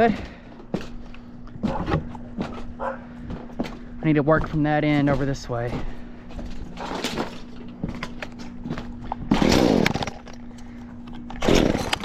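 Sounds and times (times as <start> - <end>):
chainsaw pull-starting and running: 6.7 - 12.0.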